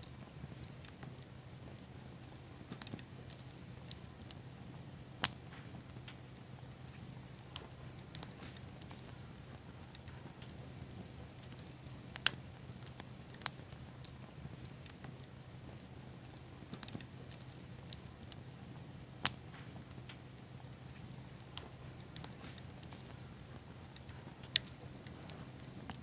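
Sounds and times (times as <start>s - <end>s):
fire crackling: 0.0s - 26.0s
sharp pops from fire: 0.0s - 26.0s.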